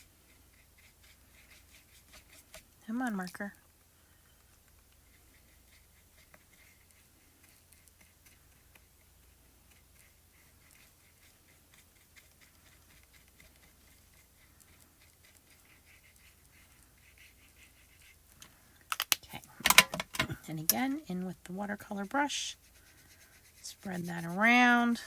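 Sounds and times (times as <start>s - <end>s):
marker scratching on paper: 0.0s - 3.2s, 5.0s - 18.3s, 22.0s - 25.0s
low steady hum: 0.0s - 25.0s.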